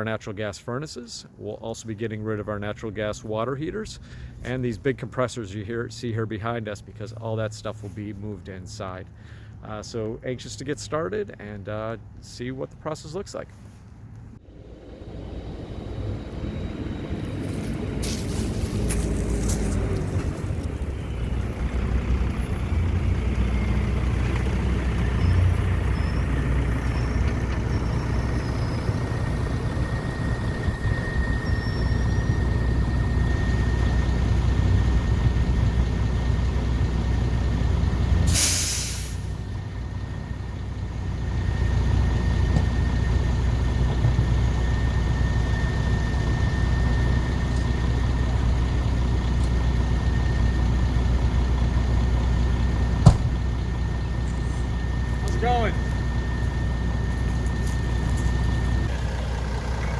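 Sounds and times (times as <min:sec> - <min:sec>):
diesel truck engine rumbling: 0:00.0 - 0:59.9
air brake hiss: 0:38.3 - 0:39.4.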